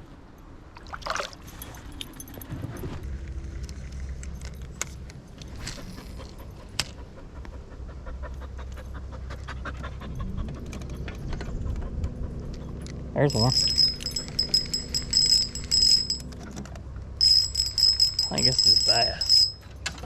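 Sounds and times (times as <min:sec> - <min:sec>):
dog panting: 0:05.8 - 0:12.7.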